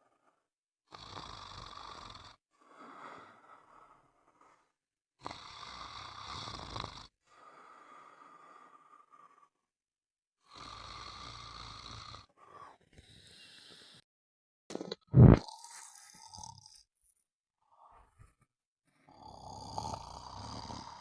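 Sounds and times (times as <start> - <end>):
loud rattling snores: 0.9 - 2.4, 5.2 - 7.2, 10.4 - 12.4, 15.0 - 16.9, 19.1 - 21.0
quiet breath out: 2.5 - 4.8, 12.2 - 14.1.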